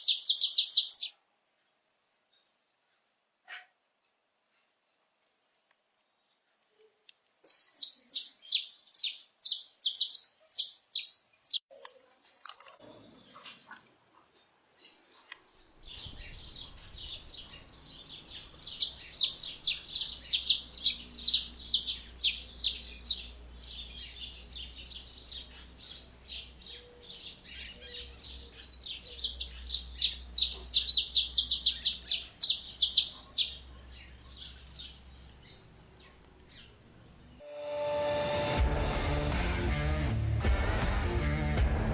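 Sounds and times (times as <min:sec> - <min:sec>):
soft bird chirping: 0:00.0 - 0:01.1, 0:07.4 - 0:11.6, 0:14.8 - 0:37.4
finch singing high notes: 0:15.8 - 0:35.6.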